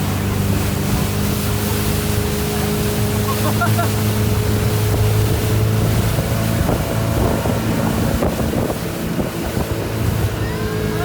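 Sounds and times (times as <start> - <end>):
motorboat engine running: 0.0 - 11.0
water rushing past: 0.0 - 11.0
wind buffeting microphone: 0.0 - 11.0.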